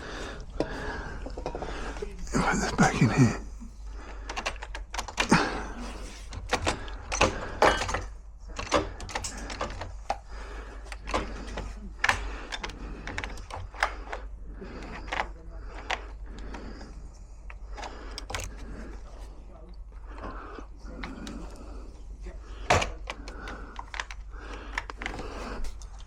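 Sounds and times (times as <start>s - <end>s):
metal lock parts clicking: 4.1s - 10.2s, 10.8s - 14.2s, 17.5s - 18.7s.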